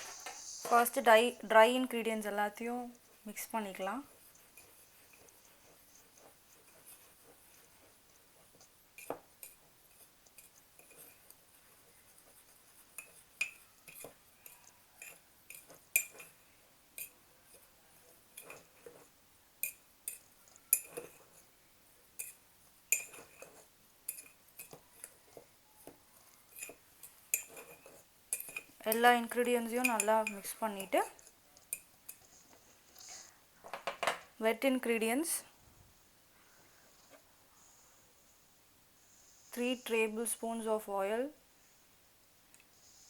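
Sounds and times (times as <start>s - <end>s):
metal spoon clinking in a mug: 12.9s - 16.4s, 19.6s - 21.3s, 22.2s - 25.2s, 26.5s - 29.0s, 29.7s - 32.2s.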